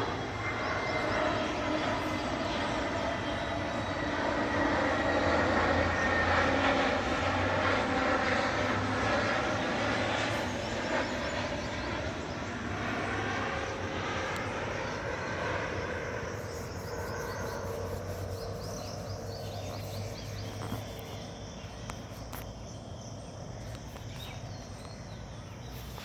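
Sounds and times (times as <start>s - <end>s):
aircraft engine drone: 0.0s - 26.0s
crickets chirping: 0.0s - 26.0s
steady background hum: 0.0s - 26.0s
birds chirping: 9.5s - 26.0s.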